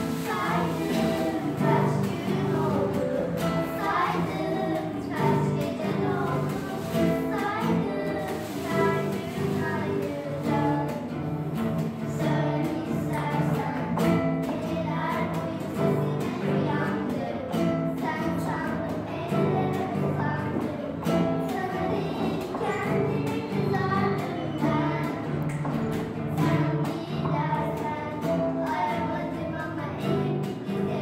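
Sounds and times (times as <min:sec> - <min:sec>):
girls singing together: 0:00.0 - 0:31.0
instrumental accompaniment: 0:00.0 - 0:31.0.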